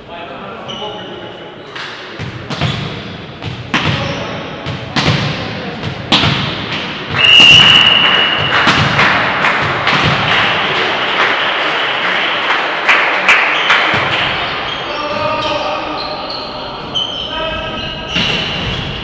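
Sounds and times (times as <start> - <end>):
ball thudding in a hall: 1.7 - 10.9, 13.7 - 15.5, 17.9 - 19.0
referee's whistle long blast: 7.2 - 8.5.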